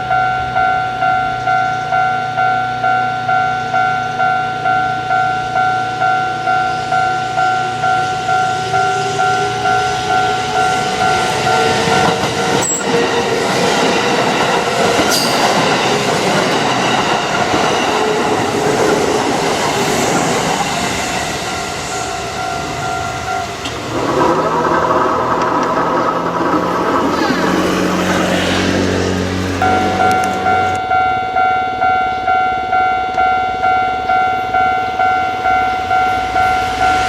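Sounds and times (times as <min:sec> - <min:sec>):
level crossing warning bell: 0:00.0 - 0:37.0
train wheels clattering on rails: 0:06.9 - 0:30.8.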